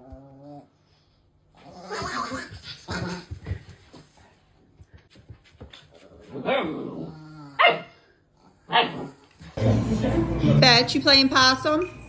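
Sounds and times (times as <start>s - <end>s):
dog growling and breathing: 6.0s - 7.6s.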